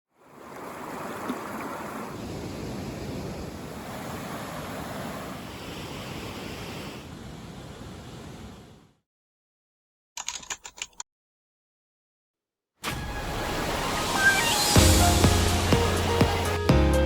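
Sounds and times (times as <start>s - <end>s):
river rushing over rocks: 13.3s - 16.7s.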